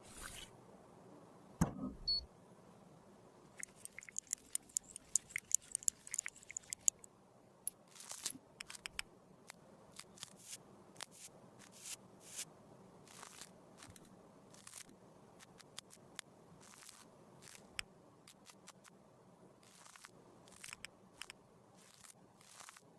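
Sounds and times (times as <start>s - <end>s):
sharp clicks and taps: 3.6s - 7.1s.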